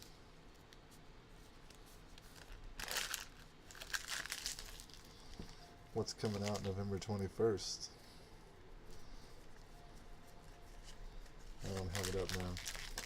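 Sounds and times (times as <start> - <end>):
card wrappers crinkling: 1.4 - 7.6, 10.3 - 13.0.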